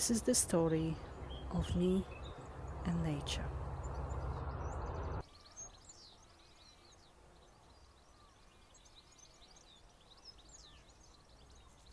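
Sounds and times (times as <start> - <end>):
small birds chirping and singing: 0.0 - 11.9.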